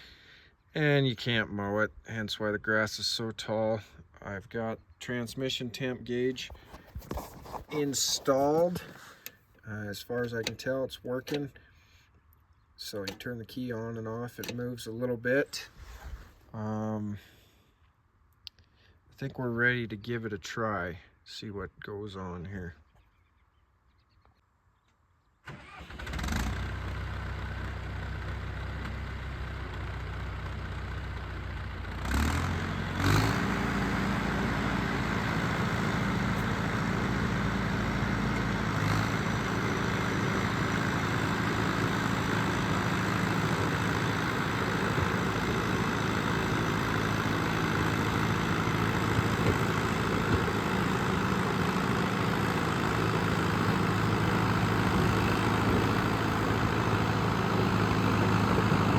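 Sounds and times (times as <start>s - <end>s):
bulldozer diesel engine: 5.2s - 9.3s, 25.6s - 58.9s.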